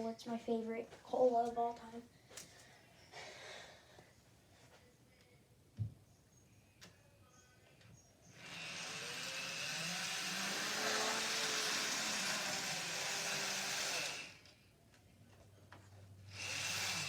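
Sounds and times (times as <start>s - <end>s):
model train motor whirring: 8.3s - 14.5s, 16.3s - 17.0s.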